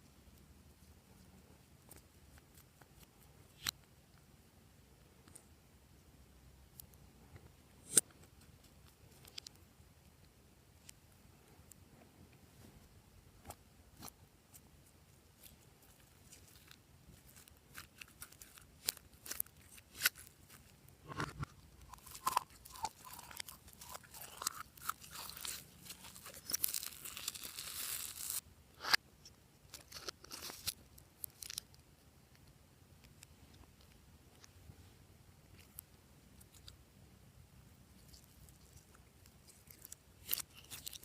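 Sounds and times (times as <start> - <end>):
slime squishing by hand: 13.4 - 29.0, 37.9 - 41.0
slime crackling and popping: 15.4 - 21.2, 21.8 - 28.9.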